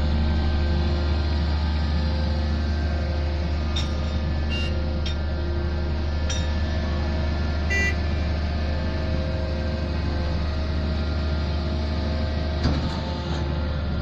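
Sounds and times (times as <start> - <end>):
pile-driving rig humming: 0.0 - 14.0.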